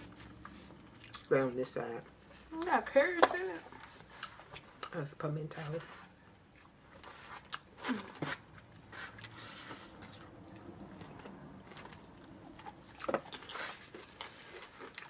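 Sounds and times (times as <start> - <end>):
chewing crunchy chips: 0.0 - 1.3, 6.2 - 15.0.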